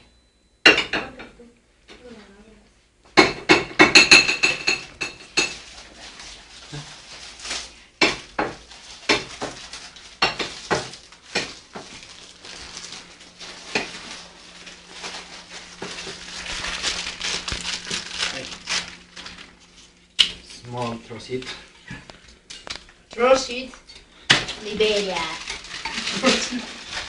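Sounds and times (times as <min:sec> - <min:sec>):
cutlery clinking against dishes: 0:03.4 - 0:05.6.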